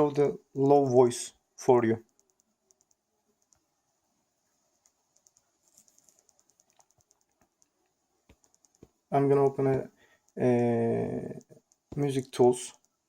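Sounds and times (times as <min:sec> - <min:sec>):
light ticks: 0:02.0 - 0:03.6, 0:04.8 - 0:09.0
faint clicks: 0:02.0 - 0:03.7, 0:04.7 - 0:10.4, 0:11.0 - 0:13.0.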